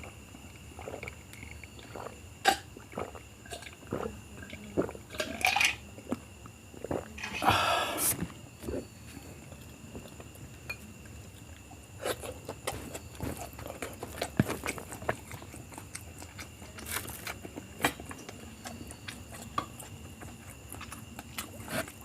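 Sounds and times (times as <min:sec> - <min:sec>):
chewing and wet mouth smacks: 0:11.3 - 0:22.0.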